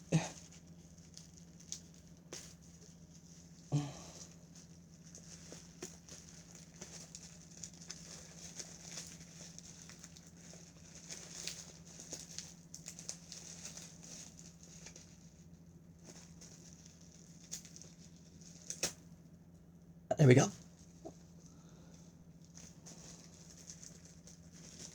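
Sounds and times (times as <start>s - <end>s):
steady low hum: 0.0s - 24.9s
package rustling open: 4.7s - 15.2s, 22.4s - 24.9s.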